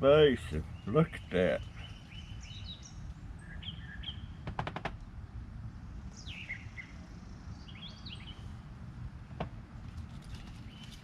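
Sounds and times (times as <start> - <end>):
songbirds chirping: 0.0 - 11.0.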